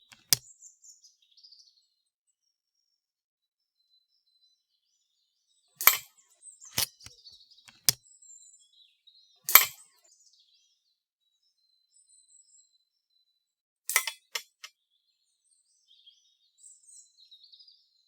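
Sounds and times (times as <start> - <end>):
metallic clicks: 0.0 - 0.4, 6.7 - 8.0.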